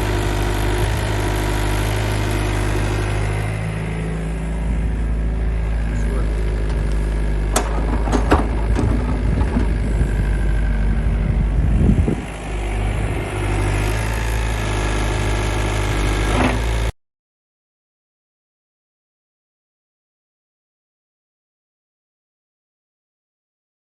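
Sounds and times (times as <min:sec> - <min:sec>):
excavator diesel engine running: 0:00.0 - 0:16.9
sharp knocks: 0:07.5 - 0:10.1.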